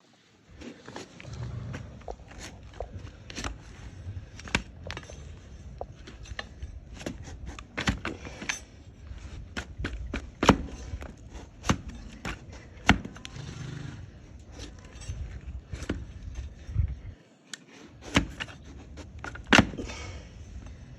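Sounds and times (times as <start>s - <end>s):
blade cutting and scraping hoof: 0.5s - 16.9s, 17.6s - 20.9s
hoof snapping: 0.8s - 8.6s, 9.3s - 16.4s.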